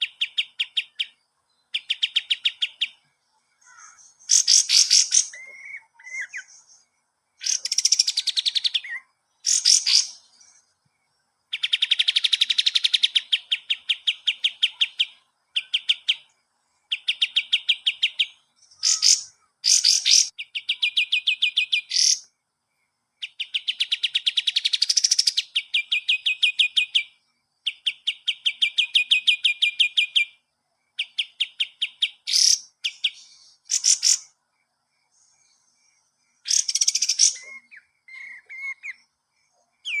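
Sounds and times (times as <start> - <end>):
songbird singing trills: 0.0 - 40.0.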